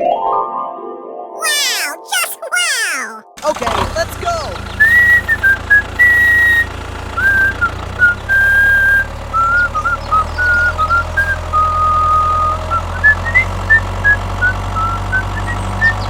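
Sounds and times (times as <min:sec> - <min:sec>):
person whistling a tune: 0:04.8 - 0:07.7, 0:08.3 - 0:11.4.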